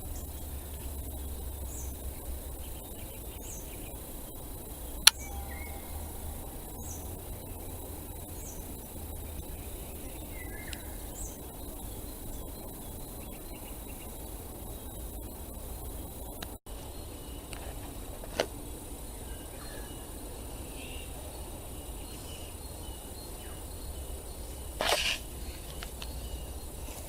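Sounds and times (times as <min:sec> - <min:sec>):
small bird chirping: 0:00.0 - 0:17.8
low background noise: 0:00.0 - 0:27.0
sharp click: 0:05.0 - 0:05.3.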